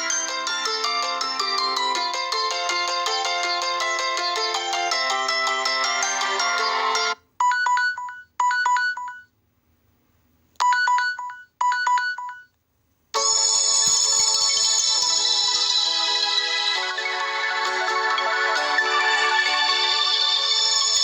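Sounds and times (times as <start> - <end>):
melodic ringtone: 0.0 - 7.2, 13.2 - 21.0
musical ringtone: 0.0 - 7.2, 13.2 - 21.0
trilling phone rings: 13.2 - 21.0.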